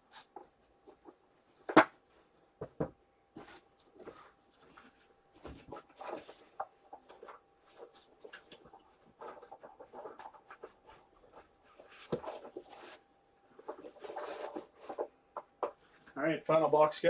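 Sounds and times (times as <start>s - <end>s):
cards and wrappers rustling: 3.4s - 15.2s.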